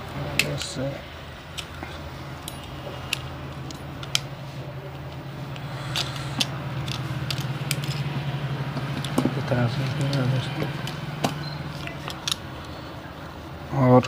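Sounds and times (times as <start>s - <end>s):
steady low hum: 0.0s - 14.0s
sharp tool clicks: 5.5s - 8.0s.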